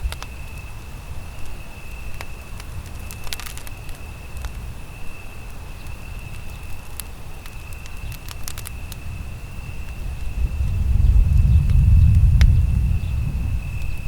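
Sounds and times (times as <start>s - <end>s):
campfire crackling and popping: 0.0s - 14.0s
low rumble: 9.0s - 14.0s.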